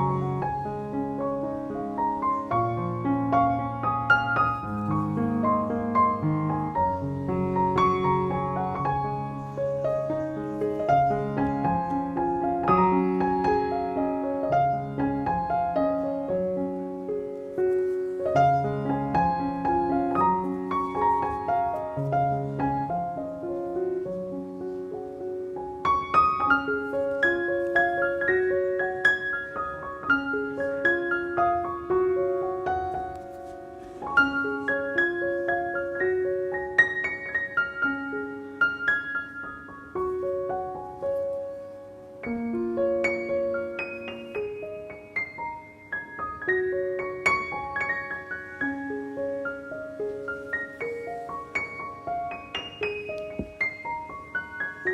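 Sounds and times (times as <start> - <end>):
gentle piano music: 0.0 - 54.9.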